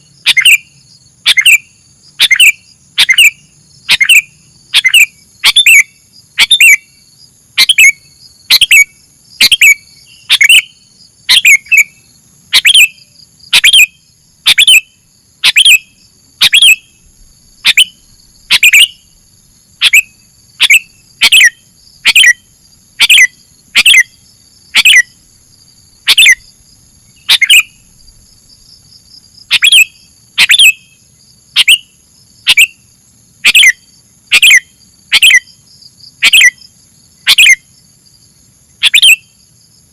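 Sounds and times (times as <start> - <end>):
bird calling sharp notes: 0.0 - 7.0, 7.6 - 19.2, 19.8 - 25.2, 26.0 - 26.5, 27.2 - 27.9, 29.5 - 30.9, 31.6 - 32.8, 33.4 - 35.5, 36.2 - 36.6, 37.3 - 37.6, 38.8 - 39.3
faint high-pitched hum: 0.0 - 39.9.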